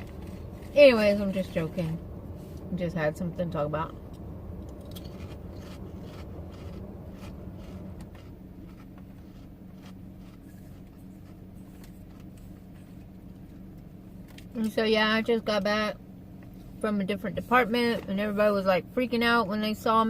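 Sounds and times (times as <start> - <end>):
low hum inside a car: 0.0 - 20.0
potato chips crunching: 4.8 - 12.4.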